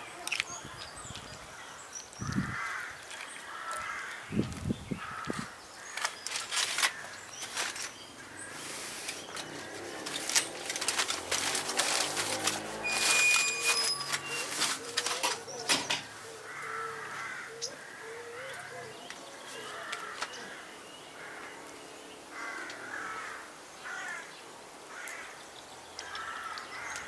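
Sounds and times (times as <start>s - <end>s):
crow cawing: 2.3s - 4.3s, 5.0s - 6.0s, 16.3s - 18.9s, 19.6s - 21.7s, 22.3s - 24.3s, 24.9s - 25.4s, 26.0s - 27.0s.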